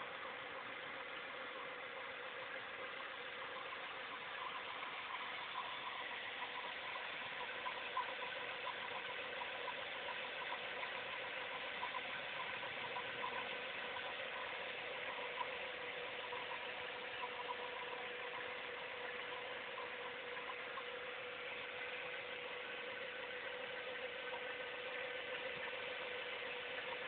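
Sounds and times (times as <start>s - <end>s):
car engine idling: 0.0s - 27.0s.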